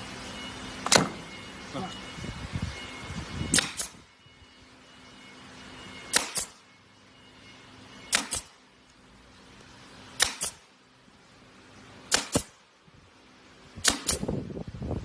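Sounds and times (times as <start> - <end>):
nail gun firing: 0.8 - 1.3, 3.5 - 4.0, 6.1 - 6.6, 8.1 - 8.6, 10.2 - 10.7, 12.1 - 12.6, 13.8 - 14.4.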